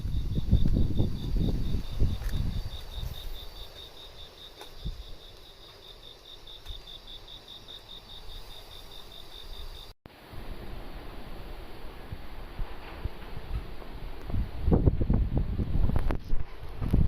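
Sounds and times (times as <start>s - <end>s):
low wind rumble: 0.0s - 5.3s, 10.1s - 17.0s
cricket chirping: 0.0s - 10.0s.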